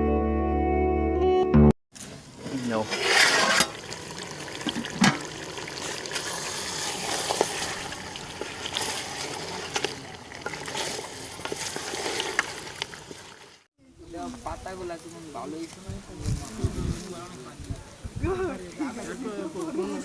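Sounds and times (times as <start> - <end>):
water running and splashing: 2.0 - 13.7.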